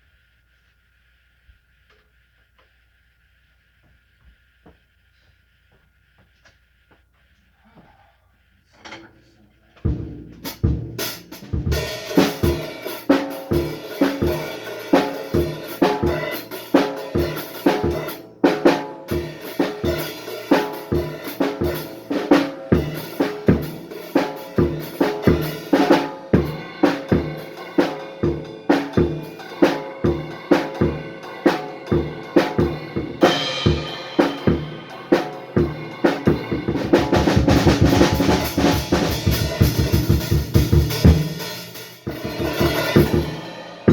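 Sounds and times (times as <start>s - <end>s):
drum kit beat: 9.7s - 43.9s.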